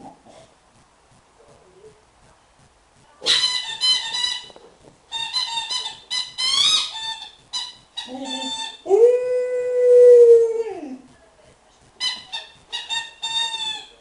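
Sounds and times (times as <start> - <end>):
squeaky rubber dog toy: 3.3 - 8.9, 12.0 - 13.9.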